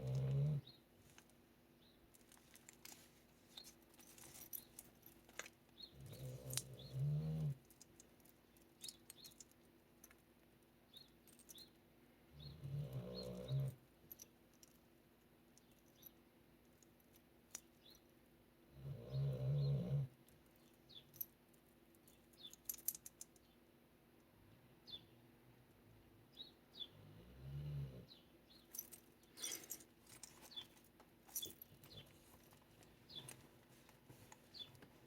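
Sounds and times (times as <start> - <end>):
dog snoring: 0.0 - 0.6, 6.1 - 7.6, 12.5 - 13.8, 18.8 - 20.1, 27.0 - 28.1.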